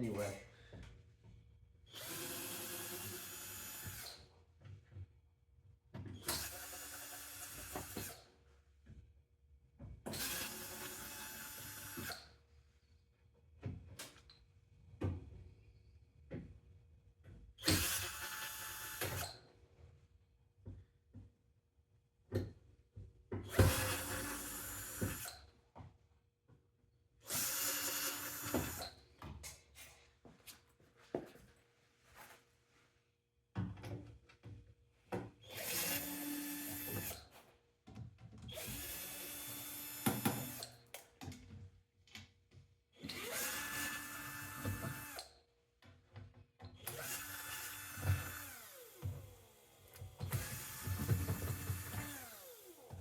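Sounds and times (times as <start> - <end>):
cordless drill running: 1.9 - 4.2, 6.2 - 8.2, 10.2 - 12.2, 17.6 - 19.3, 23.5 - 25.4, 27.3 - 29.0, 35.4 - 37.2, 38.5 - 40.9, 43.0 - 45.3, 46.8 - 53.0.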